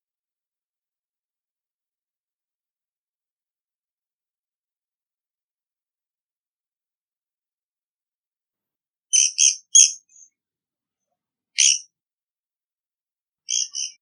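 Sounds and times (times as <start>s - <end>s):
woodpecker short high calls: 13.5s - 14.0s.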